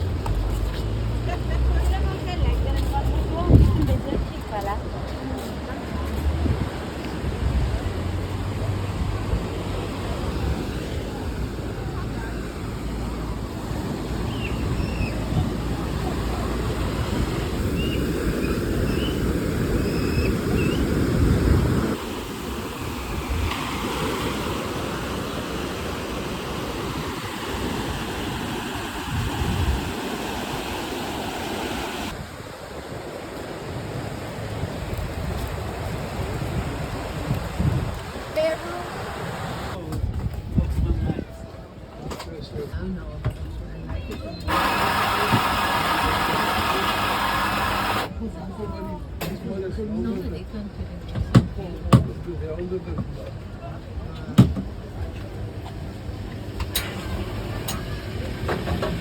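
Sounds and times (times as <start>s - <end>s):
ocean waves washing ashore: 0.0s - 39.9s, 44.5s - 49.2s, 51.8s - 59.0s
wind rumbling on microphone: 0.0s - 41.8s.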